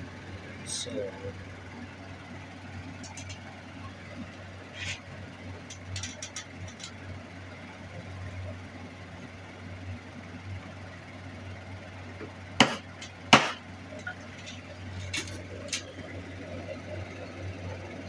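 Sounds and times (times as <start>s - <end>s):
steady low hum: 0.0s - 18.0s
light metal clicks: 3.0s - 3.5s
sharp knocks: 12.6s - 13.6s.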